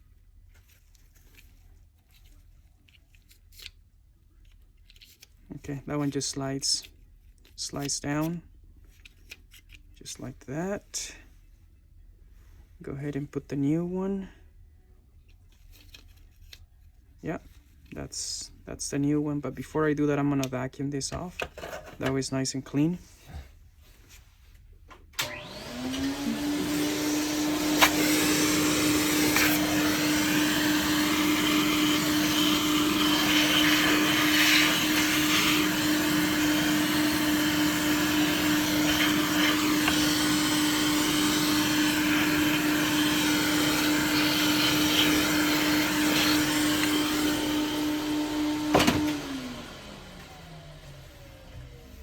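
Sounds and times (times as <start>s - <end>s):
vacuum cleaner motor whine: 25.2s - 52.0s.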